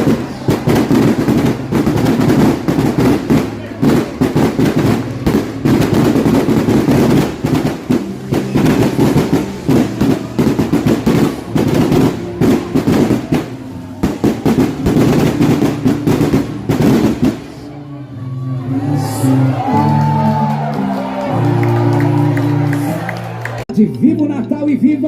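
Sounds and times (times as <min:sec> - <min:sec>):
fireworks bangs and crackles: 0:00.0 - 0:17.8
music playing: 0:00.0 - 0:25.0.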